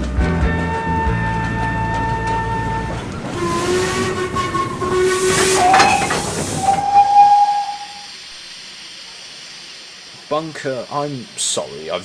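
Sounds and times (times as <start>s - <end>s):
steam locomotive whistle: 0.6s - 8.3s
hiss of escaping steam: 3.2s - 12.0s.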